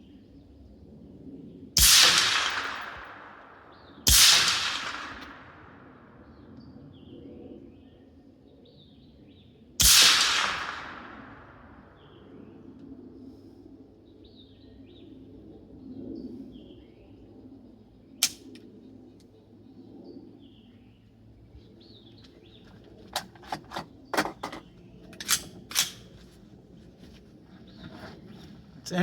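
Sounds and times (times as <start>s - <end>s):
sharp crack: 1.8s - 6.0s, 9.8s - 12.0s, 18.2s - 18.6s.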